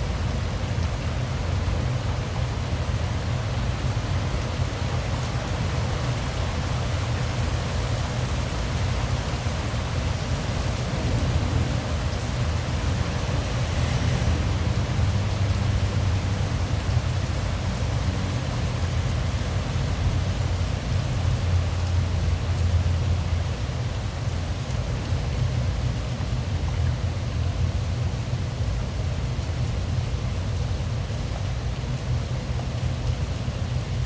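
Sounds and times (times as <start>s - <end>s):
steady rain falling: 0.0s - 34.0s.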